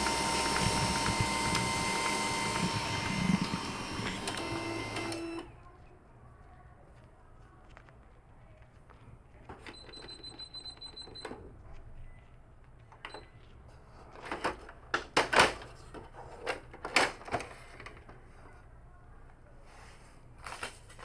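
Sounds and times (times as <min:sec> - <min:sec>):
printer high whine: 0:00.0 - 0:05.5
printer mechanical clacks: 0:00.0 - 0:05.5.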